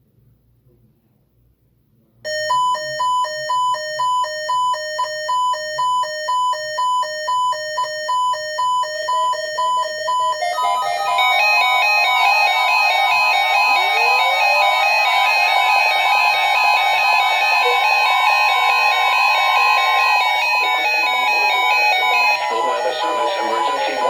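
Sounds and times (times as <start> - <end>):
alternating electronic alert beeps: 2.3 - 24.0
steady tones chord: 10.4 - 24.0.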